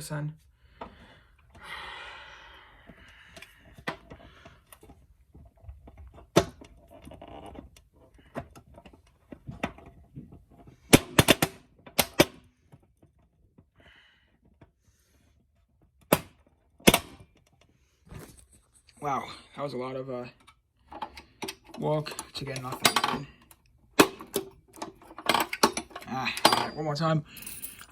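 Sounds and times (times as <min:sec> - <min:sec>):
vending machine clicks and rattles: 0:20.9 - 0:27.9.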